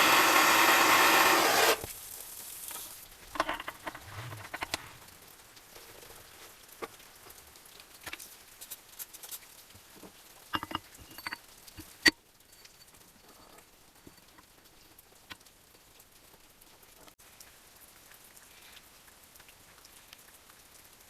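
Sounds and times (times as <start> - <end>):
metal parts clicking and tapping: 3.3 - 4.8, 10.5 - 14.5
metal clinks: 10.5 - 14.4.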